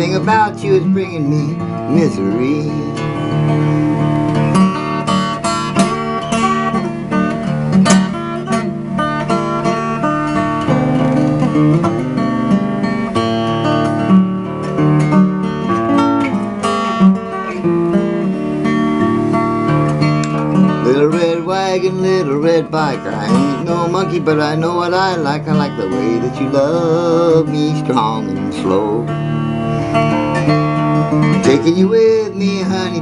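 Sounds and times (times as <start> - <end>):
acoustic guitar fingerpicking: 0.0 - 33.0.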